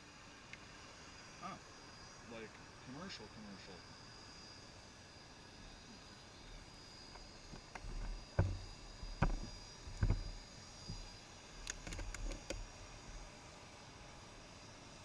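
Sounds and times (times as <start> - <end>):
dull thumps: 7.8 - 11.0.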